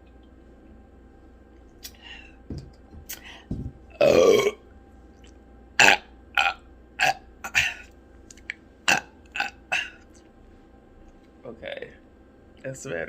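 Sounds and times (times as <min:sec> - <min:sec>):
person burping: 0:03.9 - 0:04.6, 0:05.8 - 0:07.9, 0:08.9 - 0:10.0.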